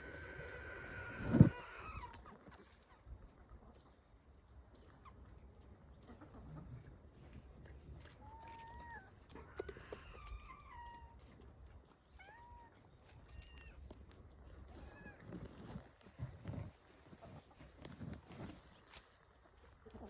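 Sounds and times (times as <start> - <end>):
faint animal calls: 0.0 - 3.0
rustle: 0.0 - 20.0.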